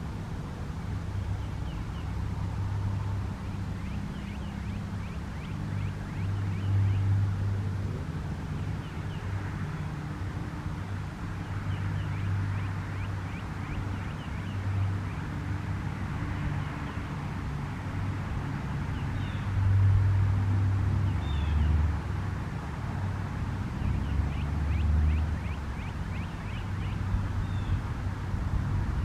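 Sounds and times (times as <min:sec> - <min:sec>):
road traffic: 0:00.0 - 0:29.0
vehicle passing: 0:14.5 - 0:29.0.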